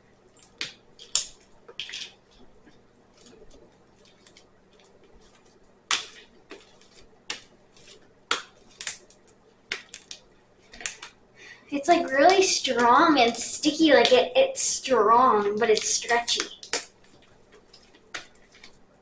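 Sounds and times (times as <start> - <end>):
slime snapping and popping: 5.9 - 6.2, 8.3 - 10.2, 16.6 - 16.9.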